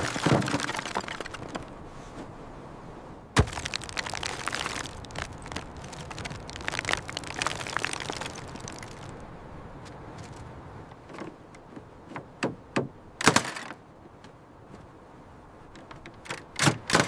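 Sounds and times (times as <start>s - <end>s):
small clicks and crackles: 0.0s - 1.7s, 3.4s - 9.2s
sharp crack: 3.4s - 9.1s.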